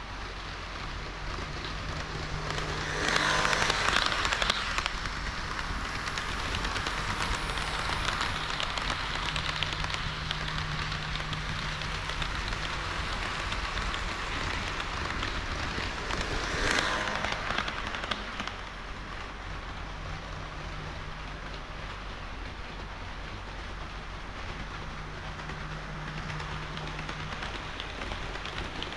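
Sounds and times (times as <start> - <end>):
low hum: 0.0 - 28.9
model train wheels rattling: 0.0 - 28.9.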